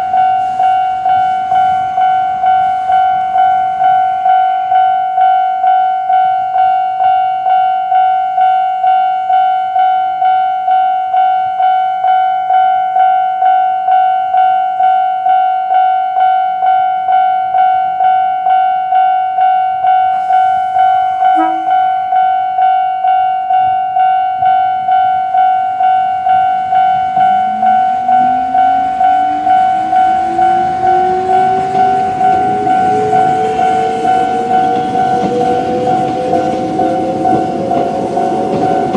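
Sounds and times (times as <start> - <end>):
level-crossing bell ringing: 0.0 - 38.9
train motor whine rising: 26.4 - 38.9.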